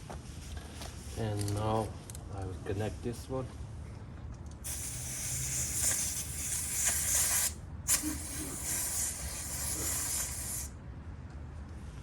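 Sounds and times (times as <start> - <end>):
air hissing at tyre valve: 4.6 - 10.8.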